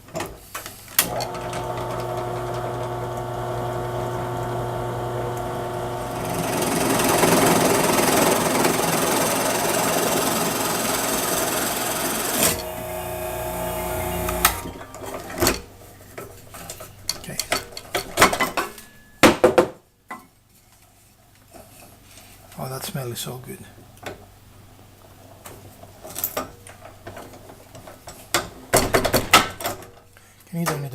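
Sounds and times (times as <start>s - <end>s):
drill press motor humming: 1.0s - 15.8s
drill bit rasping into wood: 1.2s - 14.6s.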